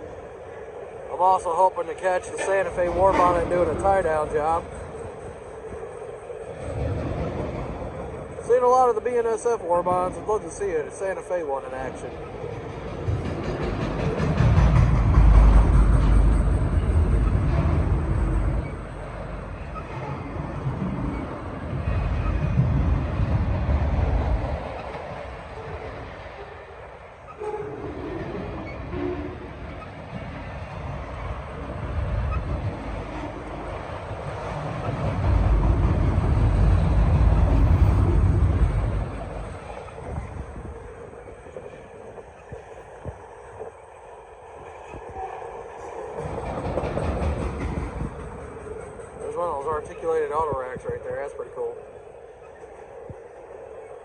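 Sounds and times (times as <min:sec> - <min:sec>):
freight train rumbling past: 0:00.0 - 0:54.0.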